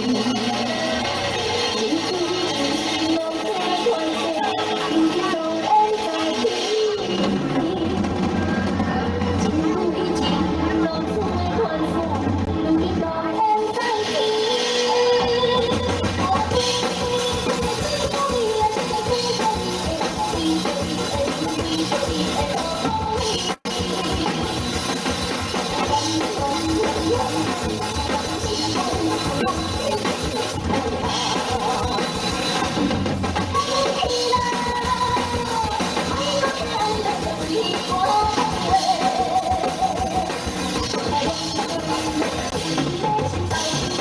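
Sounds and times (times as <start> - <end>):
guitar and bass: 0.0 - 3.1, 15.2 - 43.9
drum kit beat: 0.0 - 12.5, 13.6 - 44.0
person singing: 0.0 - 44.0.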